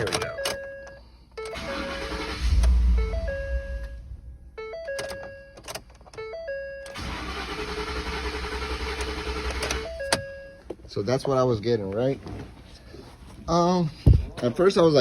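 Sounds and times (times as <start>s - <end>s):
engine cranking without starting: 1.4s - 3.9s, 6.9s - 10.0s.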